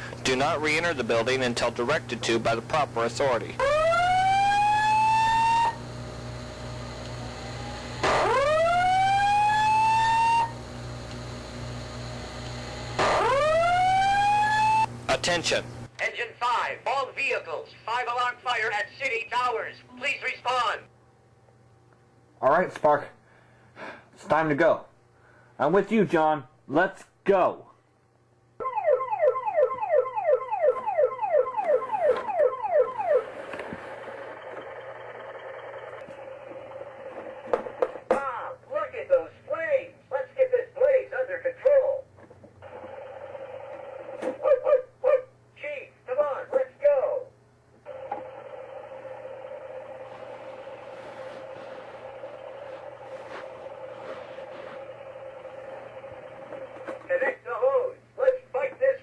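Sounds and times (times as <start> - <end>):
fire alarm whoop signal: 3.6 - 5.8, 7.2 - 10.6, 13.0 - 14.9, 28.6 - 33.3
toy electronic siren: 3.6 - 5.8, 7.2 - 10.6, 13.0 - 14.9, 28.6 - 33.3.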